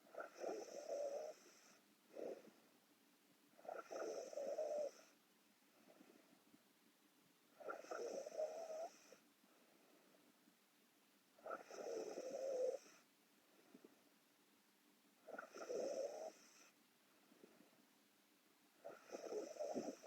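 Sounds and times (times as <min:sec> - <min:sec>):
woman snoring: 0:00.1 - 0:02.4, 0:03.6 - 0:05.1, 0:07.6 - 0:09.2, 0:11.4 - 0:13.0, 0:15.4 - 0:16.7, 0:18.9 - 0:20.0.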